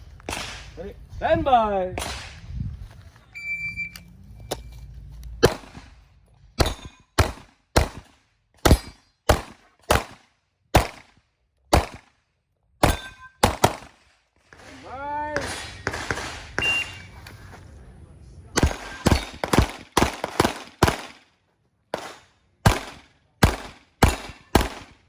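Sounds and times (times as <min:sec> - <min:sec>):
pistol shots: 0:00.2 - 0:00.8, 0:02.0 - 0:02.4, 0:05.4 - 0:06.0, 0:06.6 - 0:12.1, 0:12.8 - 0:17.1, 0:18.6 - 0:21.3, 0:21.9 - 0:25.0
shot timer beep: 0:16.6 - 0:17.1.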